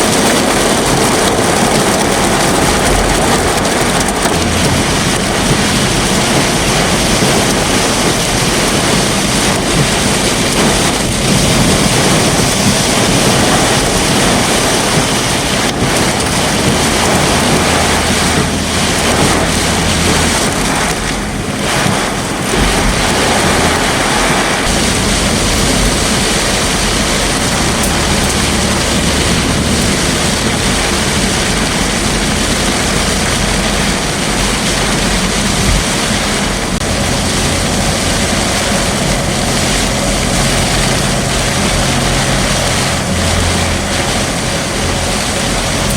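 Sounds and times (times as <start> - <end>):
heavy rain: 0.0 - 45.9
low vehicle hum: 0.0 - 45.9
wind: 0.0 - 45.9.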